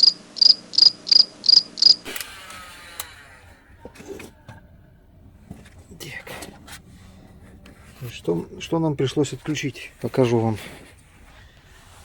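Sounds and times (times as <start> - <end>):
insect chirping: 0.0 - 2.0.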